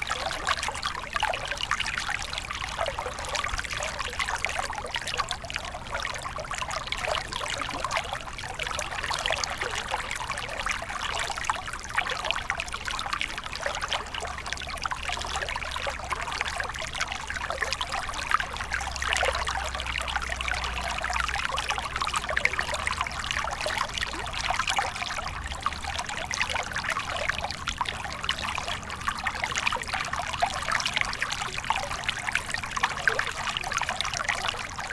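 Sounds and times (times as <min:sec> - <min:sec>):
stream water trickling over rocks: 0:00.0 - 0:34.9.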